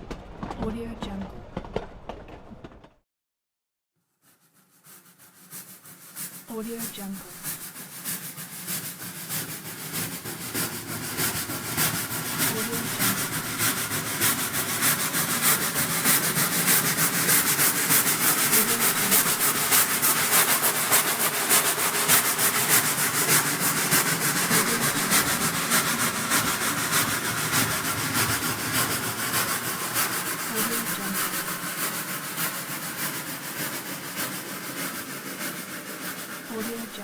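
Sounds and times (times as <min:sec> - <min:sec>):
steam locomotive chuffing: 0:05.3 - 0:37.0.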